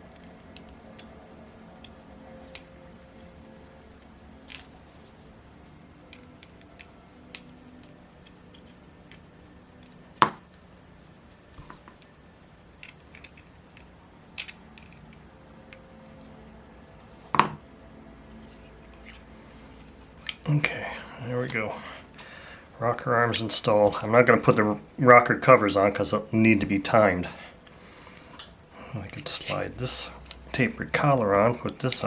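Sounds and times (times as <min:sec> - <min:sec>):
small metal parts and tools clicking: 0:04.5 - 0:04.7, 0:12.8 - 0:15.8.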